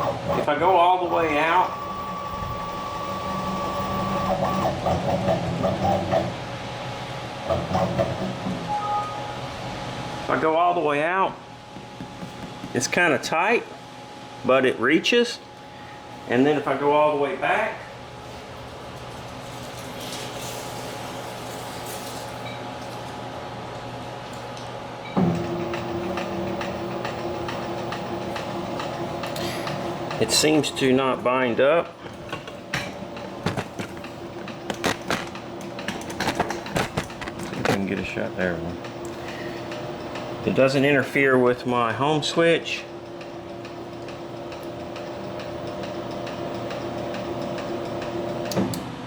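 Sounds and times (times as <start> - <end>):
stepper motor humming: 0.0 - 6.4, 25.2 - 41.0
stepper motor whine: 0.0 - 6.4
quiet mechanical sounds: 0.0 - 49.0.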